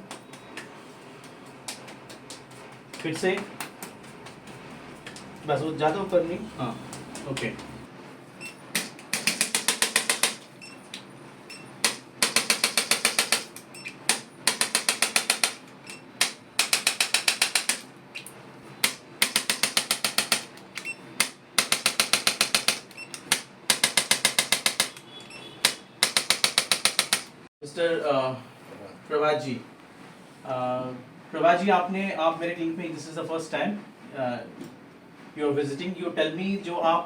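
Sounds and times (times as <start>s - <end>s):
mechanism clicking in bursts: 8.7s - 27.5s.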